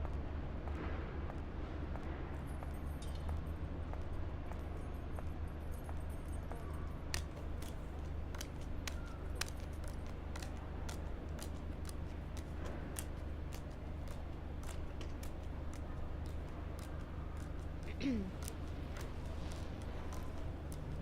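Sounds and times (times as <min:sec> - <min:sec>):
steady low hum: 0:06.9 - 0:21.0
playing cards clicking and snapping: 0:07.1 - 0:21.0.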